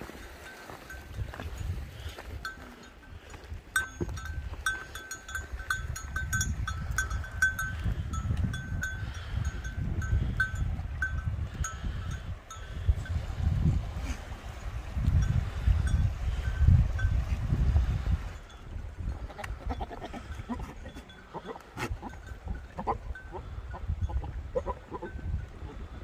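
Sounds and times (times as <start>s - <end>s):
goat bells clanking: 0.0s - 13.2s, 18.4s - 25.5s.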